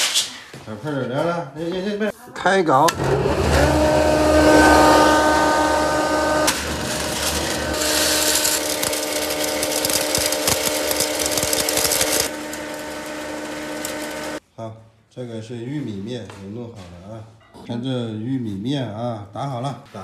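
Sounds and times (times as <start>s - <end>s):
electric grain mill grinding: 2.9s - 14.4s.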